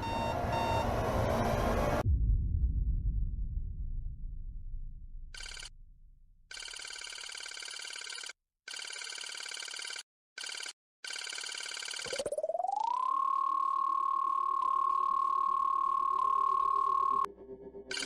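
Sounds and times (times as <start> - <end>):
steady rising tone: 0.0 - 5.0
low rumble: 0.0 - 6.5
telephone ringing: 6.5 - 17.3.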